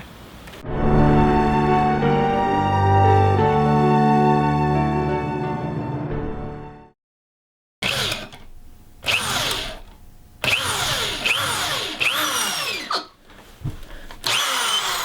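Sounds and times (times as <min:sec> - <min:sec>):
power tool bursts: 0:07.8 - 0:09.8, 0:10.4 - 0:13.1, 0:14.2 - 0:15.0.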